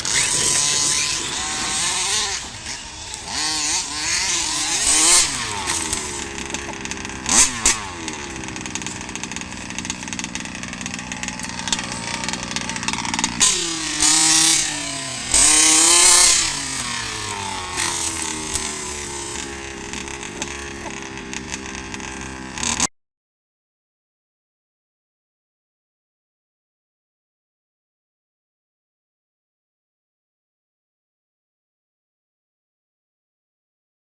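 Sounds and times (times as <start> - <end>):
two-stroke engine revving: 0.0 - 22.9.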